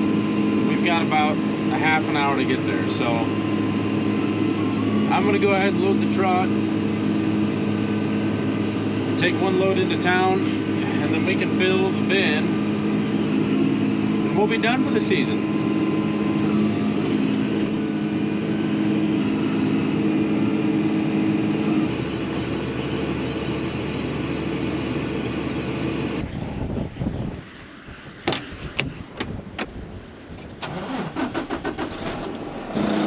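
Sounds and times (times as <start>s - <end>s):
engine running: 0.0s - 33.0s
truck engine cranking: 30.4s - 33.0s.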